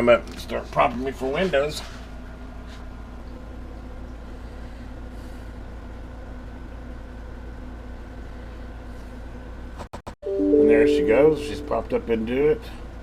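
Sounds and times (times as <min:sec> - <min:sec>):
low machine hum: 0:01.2 - 0:09.6, 0:10.3 - 0:13.0
faint even tones: 0:10.3 - 0:12.1.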